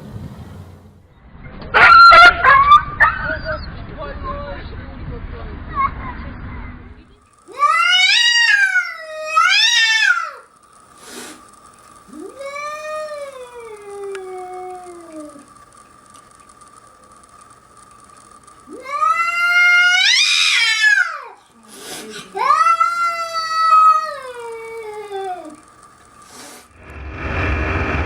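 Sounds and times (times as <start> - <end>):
cat yowling: 7.5 - 10.5, 12.1 - 15.4, 18.7 - 21.4, 22.4 - 25.6.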